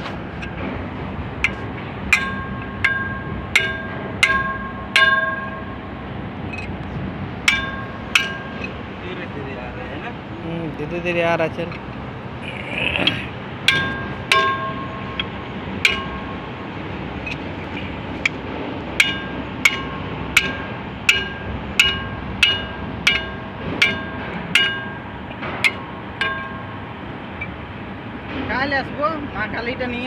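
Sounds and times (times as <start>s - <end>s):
hammer striking metal: 1.4s - 5.8s, 7.4s - 8.8s, 13.6s - 16.6s, 19.0s - 26.9s.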